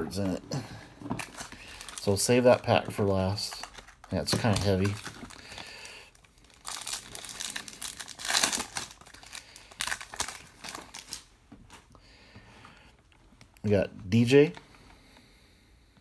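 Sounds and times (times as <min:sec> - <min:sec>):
wrapper tearing and crinkling: 0:01.2 - 0:02.6, 0:03.3 - 0:11.3.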